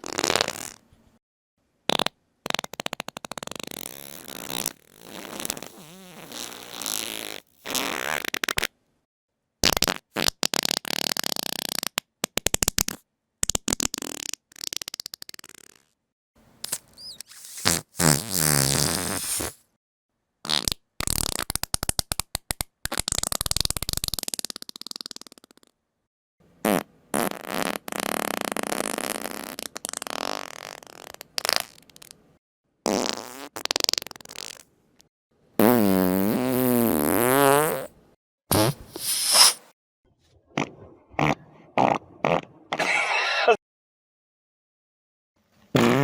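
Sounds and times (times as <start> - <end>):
juicy farts: 0.0 - 0.8, 1.9 - 8.7, 9.6 - 15.9, 16.6 - 19.6, 20.5 - 21.9, 22.9 - 25.7, 26.6 - 32.2, 32.9 - 34.7, 35.6 - 39.8, 40.6 - 43.2, 45.7 - 46.0.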